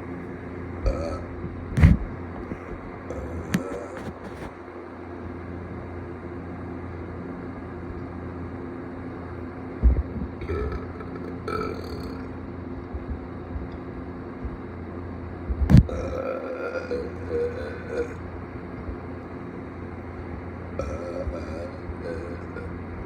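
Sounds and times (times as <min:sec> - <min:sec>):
low background hum: 0:00.0 - 0:23.0
person burping: 0:00.8 - 0:01.3, 0:10.4 - 0:12.3, 0:15.8 - 0:18.2, 0:20.8 - 0:22.7.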